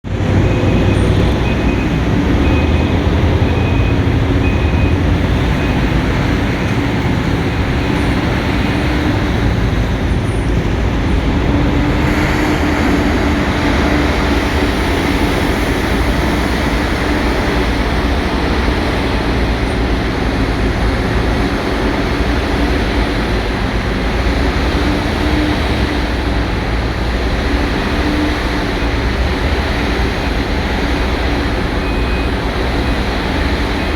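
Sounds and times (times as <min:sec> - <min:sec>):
excavator engine and hydraulic drone: 0:00.0 - 0:33.9
high-pitched warning alarm beeping: 0:00.3 - 0:20.0.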